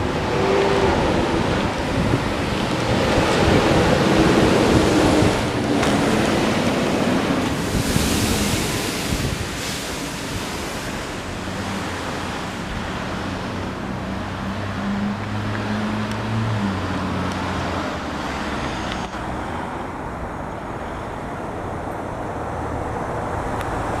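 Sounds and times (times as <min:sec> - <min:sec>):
wind buffeting microphone: 0:00.0 - 0:13.8
passing vehicle engine hum: 0:00.0 - 0:24.0
road traffic noise: 0:00.0 - 0:24.0.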